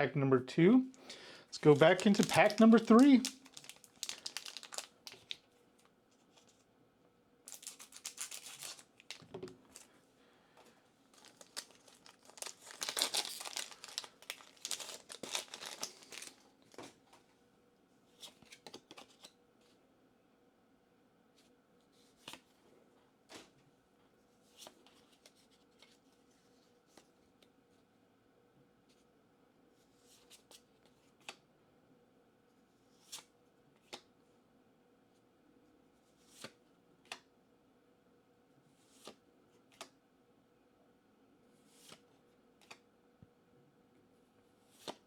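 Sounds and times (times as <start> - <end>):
cards clicking and flicking: 1.6 - 5.2
foil pack tearing and crinkling: 1.6 - 5.4, 7.5 - 9.9, 11.2 - 16.4.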